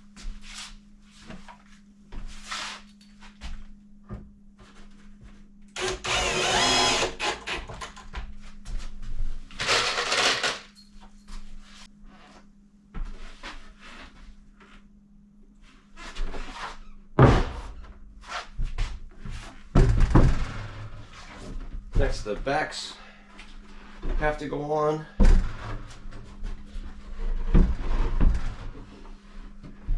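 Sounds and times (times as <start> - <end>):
power drill running: 5.8 - 7.6, 9.6 - 10.6.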